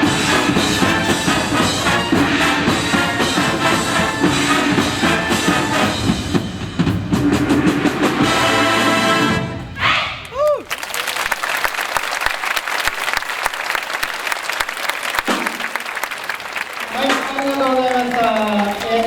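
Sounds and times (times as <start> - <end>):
wind band playing: 0.0 - 10.0.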